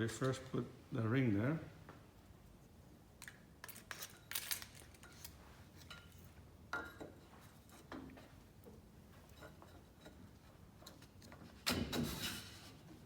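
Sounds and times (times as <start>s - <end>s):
small parts clicking and clinking: 3.2s - 5.4s.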